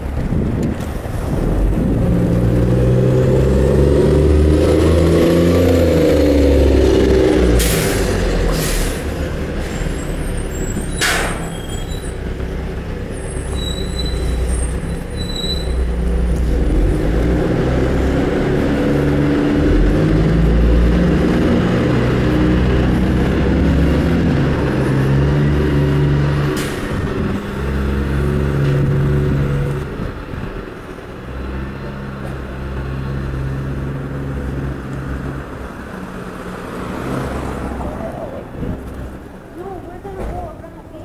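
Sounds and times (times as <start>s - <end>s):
bus diesel engine running: 0.0s - 41.0s
air brake hiss: 7.6s - 9.1s, 11.0s - 11.6s.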